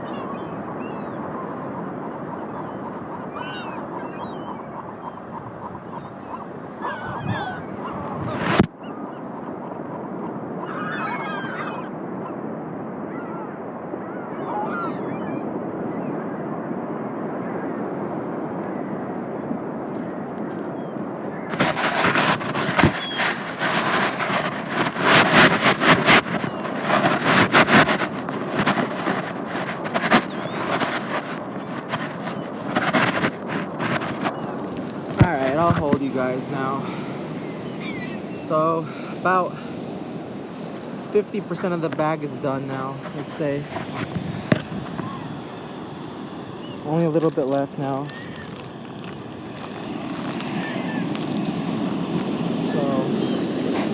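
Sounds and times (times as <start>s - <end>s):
rough gusts of noise: 0.0s - 8.7s, 21.0s - 53.9s
seagulls calling: 0.0s - 53.9s.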